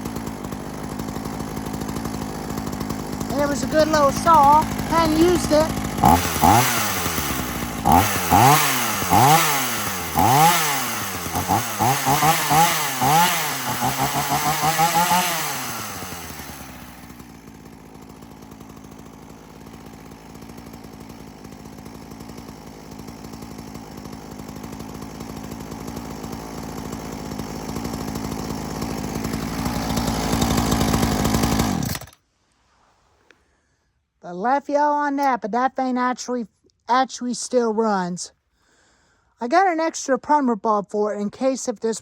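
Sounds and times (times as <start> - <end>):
chainsaw engine revving and idling: 0.0 - 32.2.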